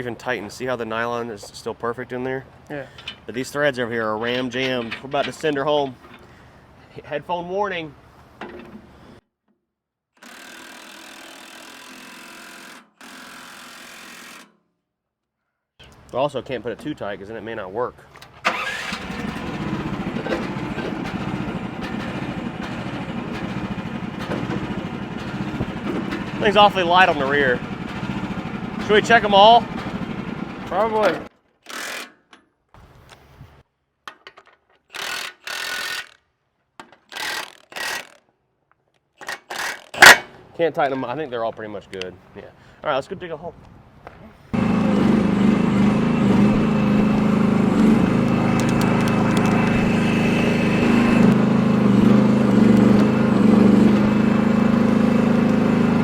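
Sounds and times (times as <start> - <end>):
ratchet wrench ratcheting: 34.9 - 36.2, 37.1 - 38.2.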